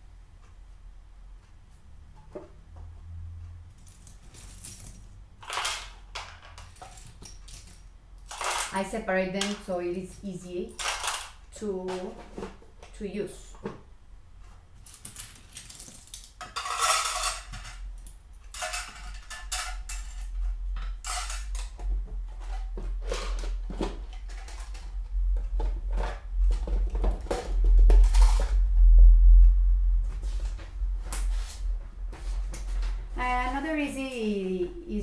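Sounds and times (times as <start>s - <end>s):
small hard objects clattering: 5.4s - 8.9s, 14.8s - 28.6s
low handling rumble: 20.2s - 35.0s.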